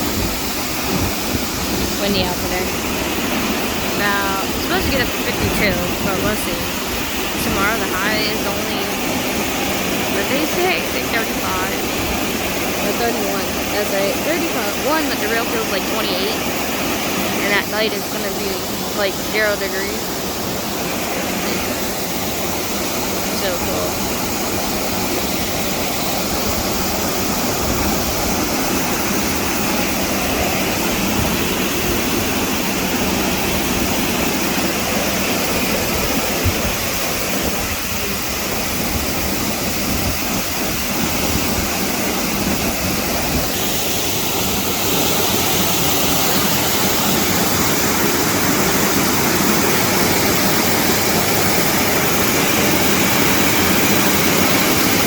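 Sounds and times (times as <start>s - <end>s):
wind buffeting microphone: 0.0s - 19.1s
waterfall rushing: 0.0s - 55.0s.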